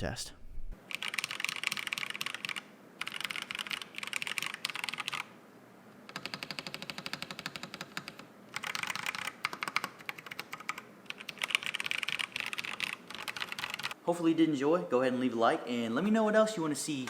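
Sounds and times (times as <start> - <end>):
mechanical keyboard typing: 0.9 - 5.3, 6.1 - 14.0.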